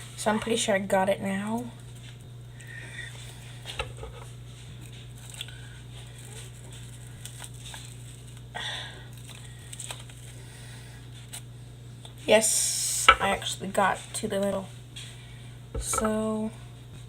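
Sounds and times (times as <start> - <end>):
steady low hum: 0.0 - 17.0
cardboard and paper rustling: 4.2 - 8.4, 9.1 - 10.3.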